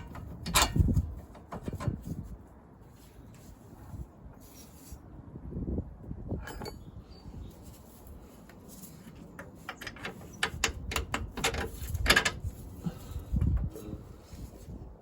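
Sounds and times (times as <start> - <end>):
tools clicking and knocking: 0.0 - 2.1, 9.2 - 12.5.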